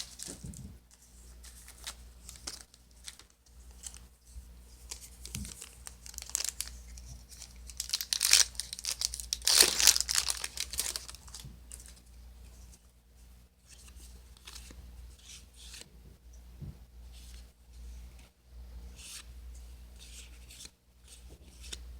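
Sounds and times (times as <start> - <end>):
foil wrapper tearing and crinkling: 5.2 - 6.7, 7.3 - 11.9.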